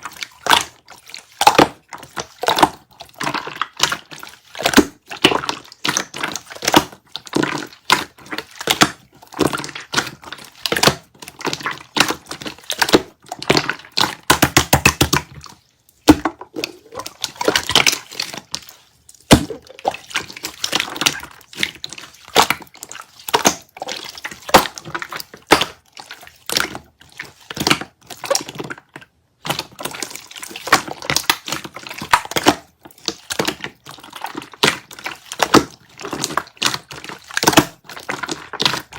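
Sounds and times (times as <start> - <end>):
hands squishing slime: 0.0 - 38.9.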